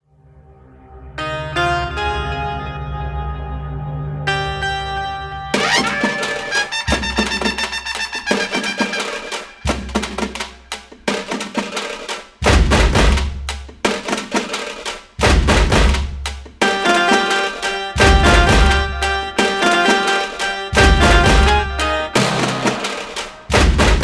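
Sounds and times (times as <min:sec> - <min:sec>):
song with busy drum beat: 0:05.6 - 0:24.0.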